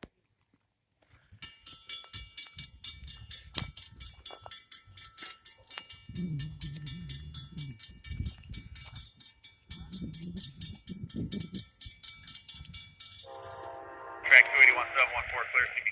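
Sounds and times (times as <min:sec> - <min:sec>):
railroad crossing bell ringing: 0:01.9 - 0:15.0
low hum: 0:05.8 - 0:09.1.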